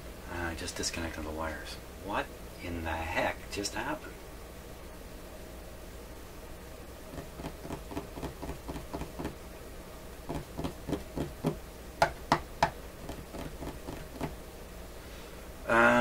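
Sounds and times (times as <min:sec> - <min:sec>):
light knocks and taps: 0:07.2 - 0:09.4, 0:10.3 - 0:14.3.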